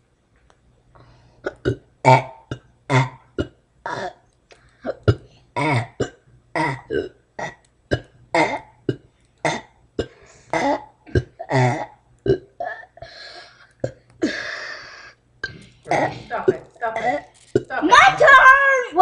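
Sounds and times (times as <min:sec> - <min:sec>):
child burping: 0:01.4 - 0:04.2, 0:04.8 - 0:08.8, 0:09.4 - 0:13.0, 0:15.4 - 0:18.2.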